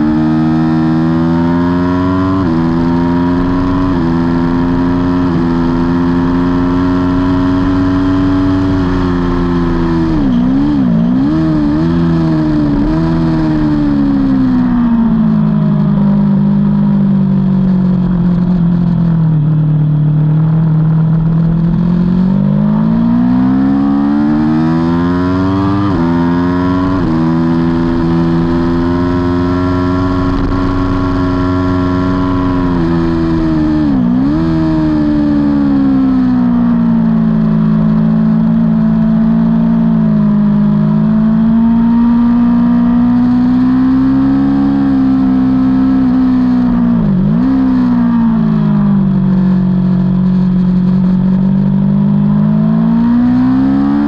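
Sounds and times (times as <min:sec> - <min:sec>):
motorcycle engine at racing speed: 0:00.0 - 0:54.0.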